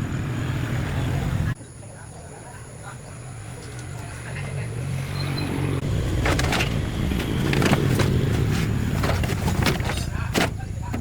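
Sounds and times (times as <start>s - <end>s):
engine humming: 0.0s - 1.6s, 2.8s - 11.0s
scrapes and clatters: 6.2s - 11.0s.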